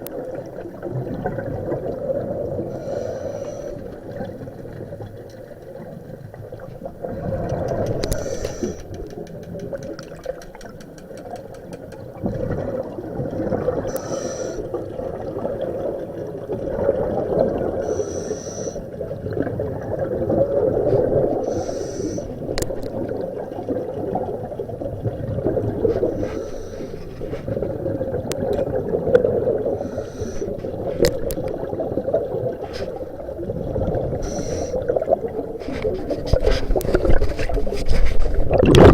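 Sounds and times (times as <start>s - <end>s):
water lapping around boat: 0.0s - 38.9s
short hiss: 8.1s - 9.0s, 34.2s - 34.8s.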